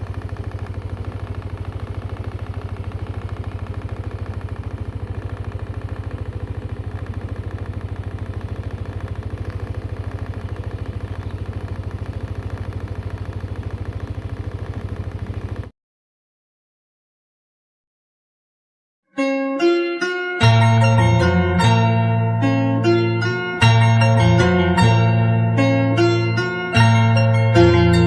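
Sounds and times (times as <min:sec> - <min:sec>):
vehicle engine running: 0:00.0 - 0:15.7, 0:20.0 - 0:28.0.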